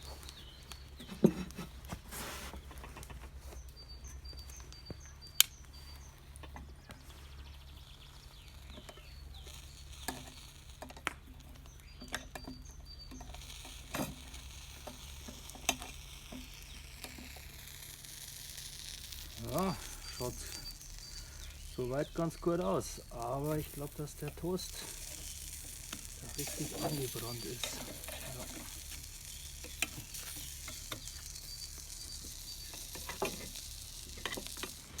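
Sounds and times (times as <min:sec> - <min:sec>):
sandwich sizzling in iron: 0:00.0 - 0:35.0
sharp clicks: 0:04.5 - 0:05.8.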